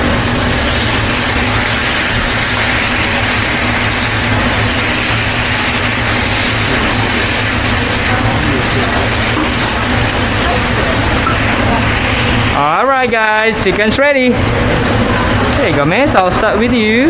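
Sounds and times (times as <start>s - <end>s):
chicken sizzling on a griddle: 0.0s - 13.5s
low hum: 0.0s - 16.6s.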